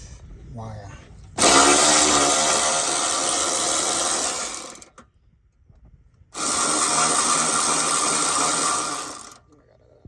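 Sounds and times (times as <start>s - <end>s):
power tool backing out a bolt: 1.4s - 5.1s, 6.4s - 9.4s.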